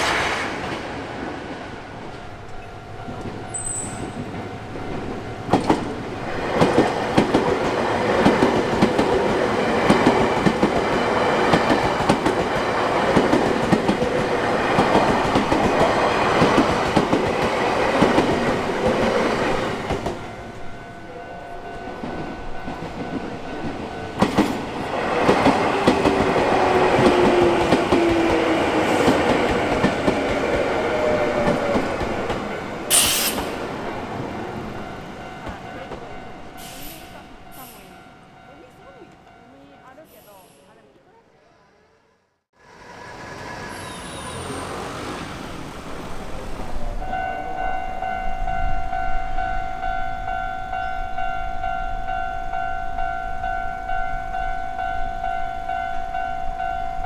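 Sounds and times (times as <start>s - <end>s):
train wheels clattering over rail joints: 2.1s - 20.2s
short sharp hiss: 32.9s - 33.6s.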